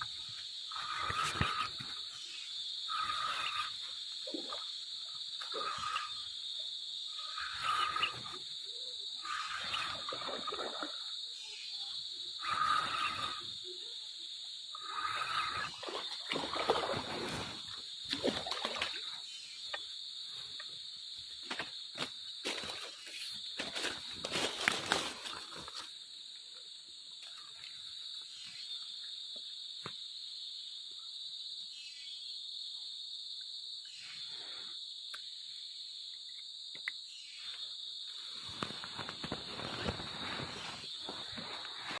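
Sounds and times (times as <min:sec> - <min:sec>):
water splashing: 0:09.2 - 0:11.1, 0:14.9 - 0:19.3.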